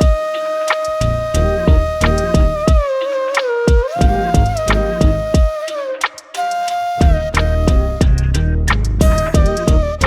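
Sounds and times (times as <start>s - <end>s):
synth melody: 1.2s - 2.9s, 4.0s - 5.6s
steady beat with deep bass: 1.3s - 2.9s, 3.8s - 5.5s, 7.0s - 10.0s.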